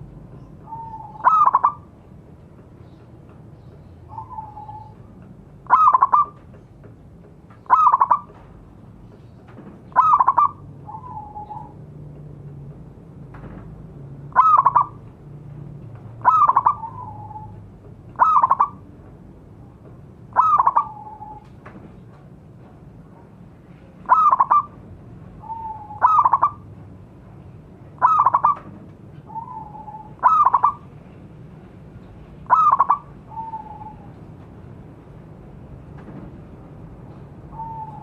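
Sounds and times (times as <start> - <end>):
dove cooing: 0.6 - 1.9, 4.1 - 5.0, 5.7 - 6.4, 7.7 - 8.3, 9.9 - 11.7, 14.3 - 15.0, 16.2 - 17.6, 18.2 - 18.8, 20.3 - 21.4, 24.1 - 24.8, 25.4 - 26.6, 28.0 - 28.6, 29.3 - 30.9, 32.4 - 34.2, 37.5 - 38.0
fainter lower dove call: 25.4 - 26.6, 32.5 - 34.1.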